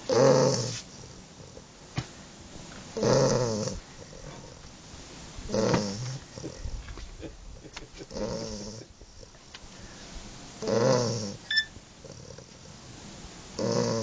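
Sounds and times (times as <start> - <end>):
dog snoring: 0.0 - 1.6, 3.0 - 4.6, 5.5 - 6.5, 8.1 - 8.8, 10.6 - 11.4, 13.6 - 14.0
high squeak: 11.5 - 11.7.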